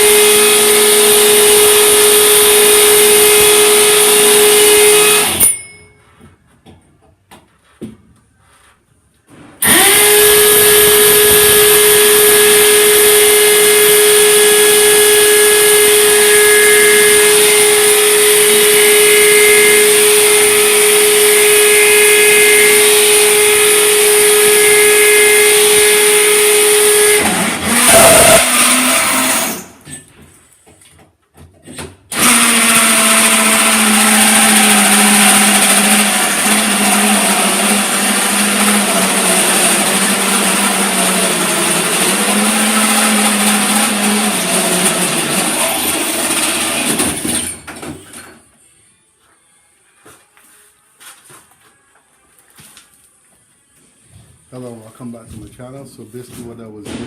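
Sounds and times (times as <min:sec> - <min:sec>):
electric drill boring metal: 0:00.0 - 0:05.6, 0:09.6 - 0:29.8, 0:32.1 - 0:47.0.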